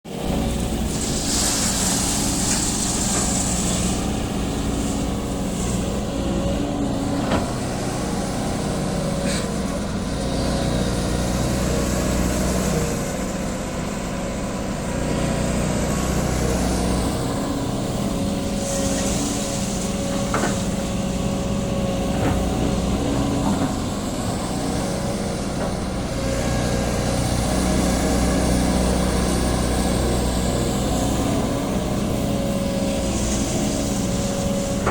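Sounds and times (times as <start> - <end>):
hydraulic excavator running: 0.1 - 34.9
hydraulic hiss: 0.8 - 9.8, 17.8 - 34.9.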